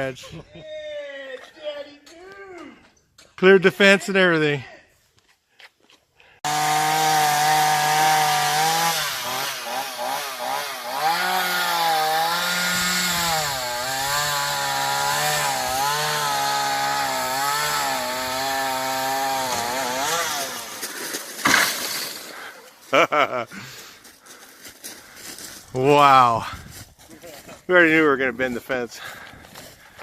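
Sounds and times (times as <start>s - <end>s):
chainsaw cutting wood: 6.4s - 22.8s.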